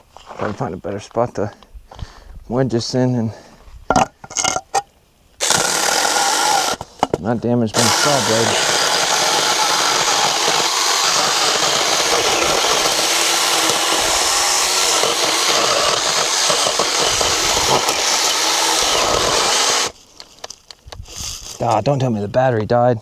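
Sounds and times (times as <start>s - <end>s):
power saw cutting firewood: 5.4s - 6.8s, 7.7s - 20.0s.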